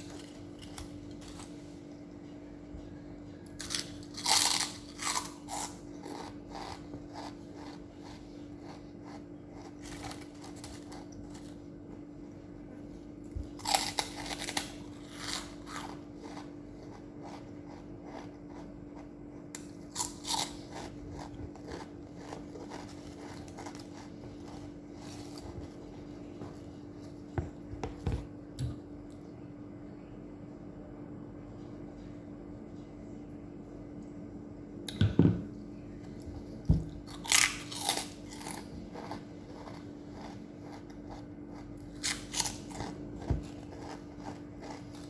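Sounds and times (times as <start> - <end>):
crunchy food chewing: 0.0 - 2.1, 3.4 - 28.0, 36.1 - 45.0
steady low hum: 0.0 - 45.0.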